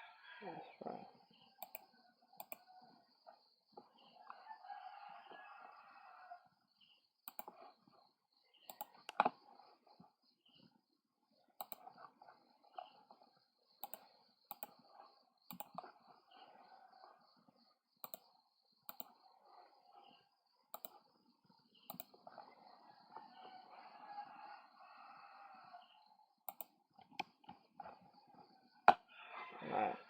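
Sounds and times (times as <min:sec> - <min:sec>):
rooster crowing: 0:00.0 - 0:00.8, 0:04.2 - 0:06.5, 0:22.8 - 0:26.0, 0:29.0 - 0:30.0
computer mouse clicks: 0:01.6 - 0:02.7, 0:07.2 - 0:07.7, 0:08.6 - 0:09.4, 0:11.6 - 0:12.1, 0:13.8 - 0:16.0, 0:18.0 - 0:19.2, 0:20.7 - 0:21.2, 0:21.8 - 0:22.4, 0:26.4 - 0:27.6.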